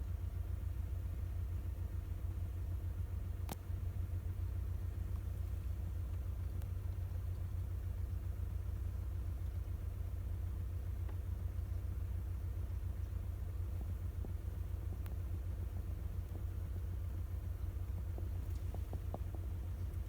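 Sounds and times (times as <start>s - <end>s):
car engine rumbling: 12.0s - 20.0s.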